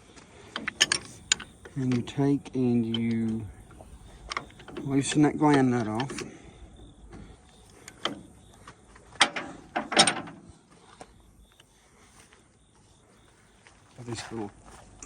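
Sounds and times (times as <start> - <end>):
wrench clanking and scraping metal: 0.5 - 6.4, 9.2 - 10.5.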